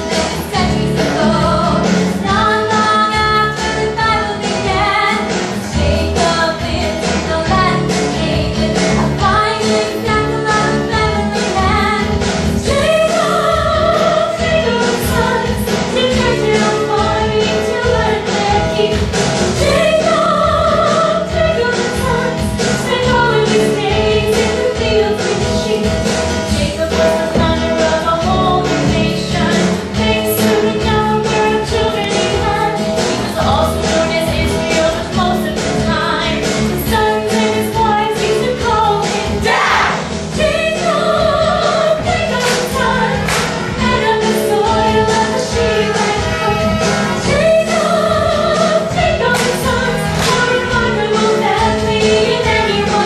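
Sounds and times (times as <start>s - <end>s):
choir singing in harmony: 38.4s - 53.0s.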